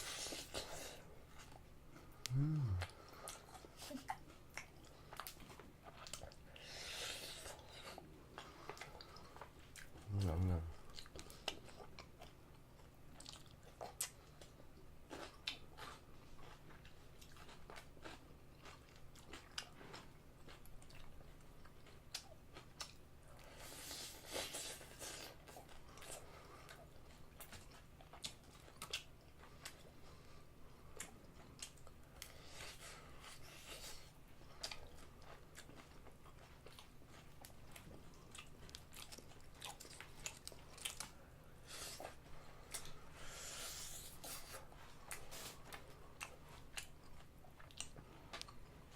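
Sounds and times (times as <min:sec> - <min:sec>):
wet mouth clicks: 0:02.2 - 0:02.9
crunchy chewing and biting: 0:31.0 - 0:48.9.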